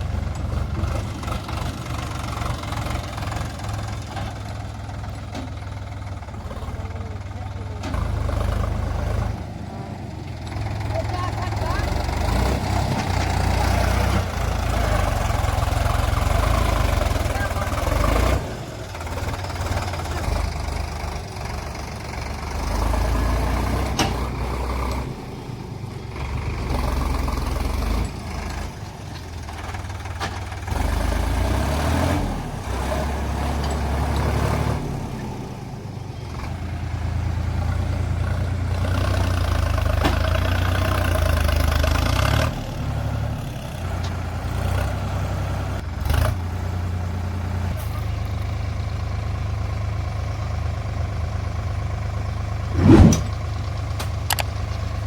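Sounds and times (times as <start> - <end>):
heavy diesel engine running: 0.0 - 46.0.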